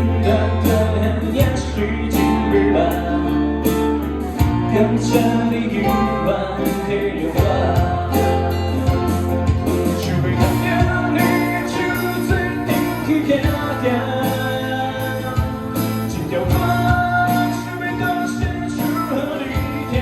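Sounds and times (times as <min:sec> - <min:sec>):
bass: 0:00.0 - 0:20.0
guitars: 0:00.0 - 0:20.0
drum kit beat: 0:03.7 - 0:20.0.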